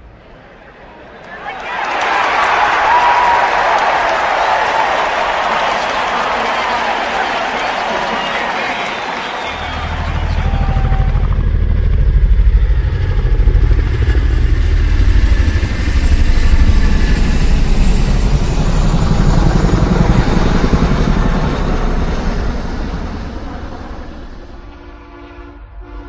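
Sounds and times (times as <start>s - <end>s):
engine throbbing: 9.0s - 24.9s.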